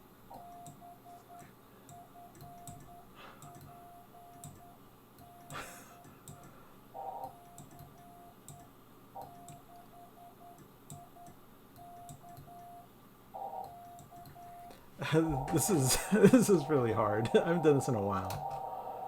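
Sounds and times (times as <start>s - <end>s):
morse code tone: 0.4s - 6.1s, 7.3s - 8.4s, 9.3s - 12.9s, 13.7s - 14.7s
rushes of radio noise: 15.0s - 19.0s.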